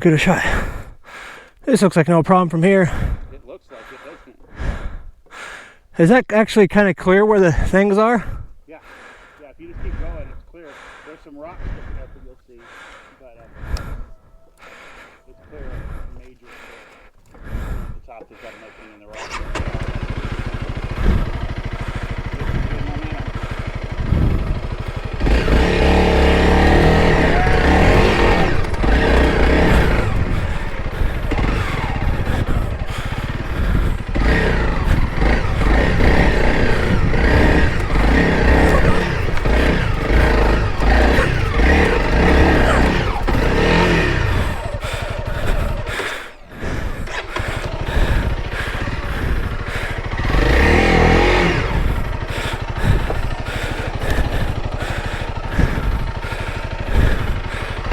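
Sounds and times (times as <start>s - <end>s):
motorcycle engine revving: 18.6s - 57.9s.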